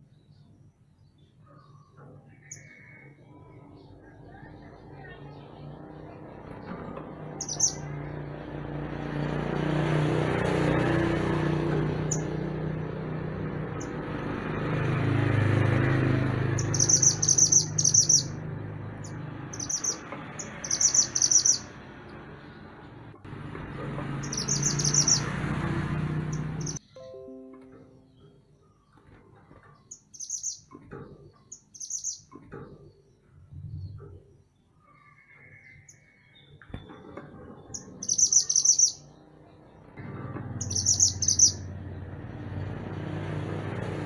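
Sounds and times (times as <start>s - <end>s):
songbird trilling: 7.4s - 8.0s, 16.5s - 18.4s, 19.0s - 21.8s, 24.2s - 25.4s, 29.9s - 30.7s, 31.5s - 32.4s, 37.8s - 39.1s, 40.6s - 41.7s.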